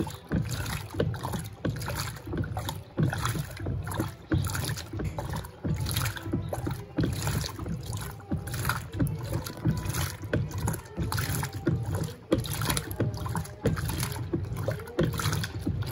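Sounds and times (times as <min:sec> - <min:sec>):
washing machine low thump: 0:00.0 - 0:15.9
washing machine sloshing water: 0:00.0 - 0:15.9.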